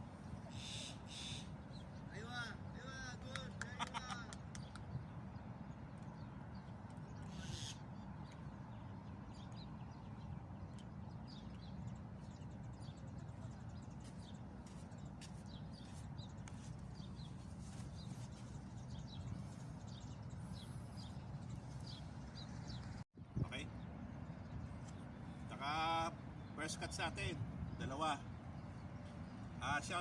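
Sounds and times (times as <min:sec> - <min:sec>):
faint bird chirps: 0:06.6 - 0:14.4.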